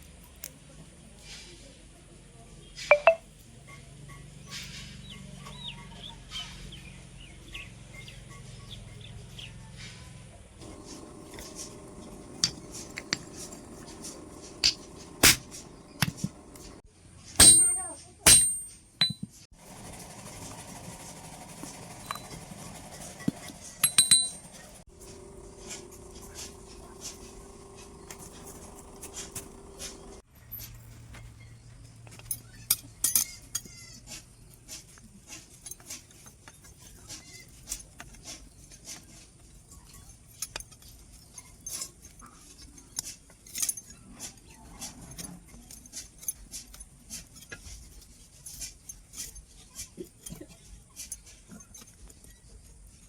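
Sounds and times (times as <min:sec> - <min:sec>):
tools clinking on a workbench: 0:02.9 - 0:03.2, 0:10.6 - 0:16.8, 0:17.4 - 0:19.4, 0:23.2 - 0:30.8, 0:32.0 - 0:52.4
steady low hum: 0:10.6 - 0:16.8, 0:19.7 - 0:30.2.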